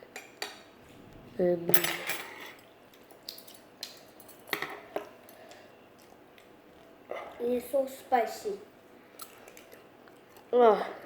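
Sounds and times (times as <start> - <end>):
utensils clinking against dish: 1.7 - 2.6.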